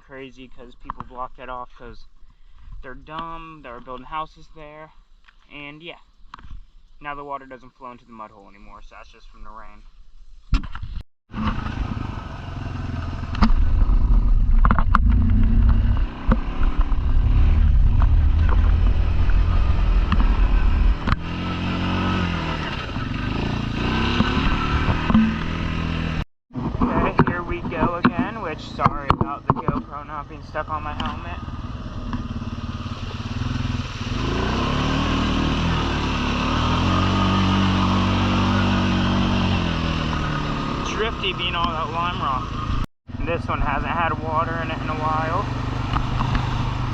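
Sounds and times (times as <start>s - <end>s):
atv engine running: 11.3s - 46.9s.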